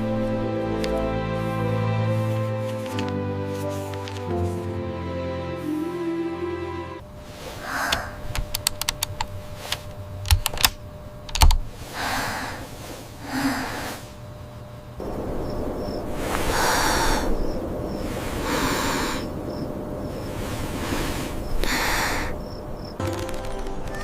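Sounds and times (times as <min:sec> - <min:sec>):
breathy rushing sounds: 0:07.3 - 0:08.3, 0:11.8 - 0:14.2, 0:15.0 - 0:23.0.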